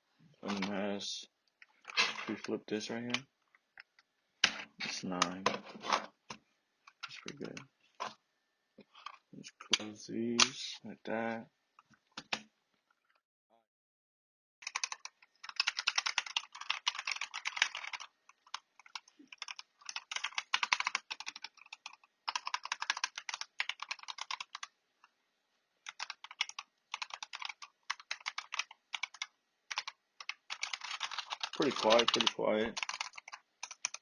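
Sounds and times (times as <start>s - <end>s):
rapid keyboard typing: 14.6s - 24.8s, 25.8s - 34.0s.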